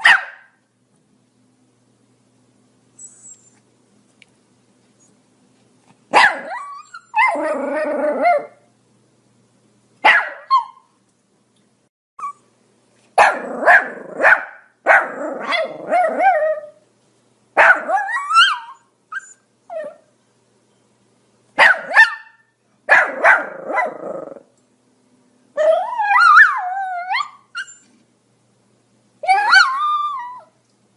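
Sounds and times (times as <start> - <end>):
small dog yappy barking: 0.0 - 0.6, 6.1 - 7.4, 10.0 - 10.9, 13.2 - 16.4, 17.6 - 18.8, 21.6 - 24.1.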